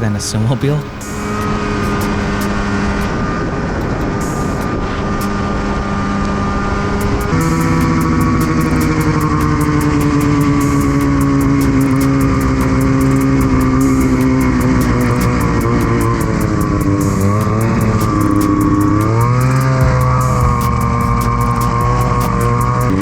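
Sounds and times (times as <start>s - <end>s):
snowmobile engine running: 0.0s - 23.0s.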